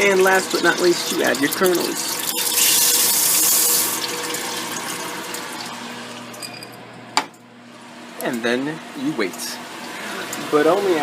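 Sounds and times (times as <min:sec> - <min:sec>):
popcorn sizzling in hot oil: 0:00.0 - 0:06.2.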